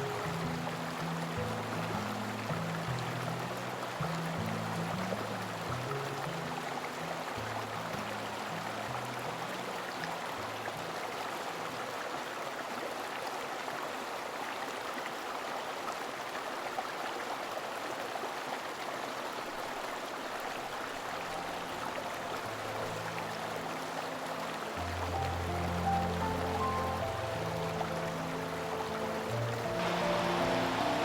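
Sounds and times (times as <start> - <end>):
soft low music notes: 0.0 - 11.5, 20.8 - 31.0
creek water rushing: 0.0 - 31.0.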